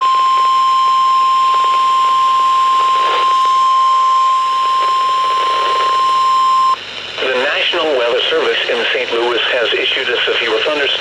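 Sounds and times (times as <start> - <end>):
steady alarm tone: 0.0 - 6.8
radio hiss: 0.0 - 11.0.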